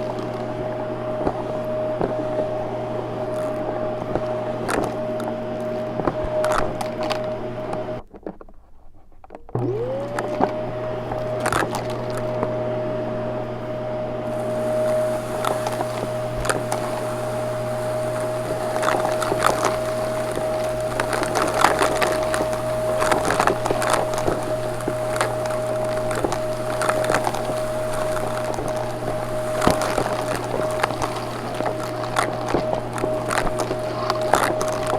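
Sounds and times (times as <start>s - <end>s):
vacuum cleaner motor whine: 0.0s - 8.1s, 9.4s - 34.9s
debris clicking in vacuum: 0.0s - 8.4s, 9.6s - 12.5s, 14.3s - 34.9s.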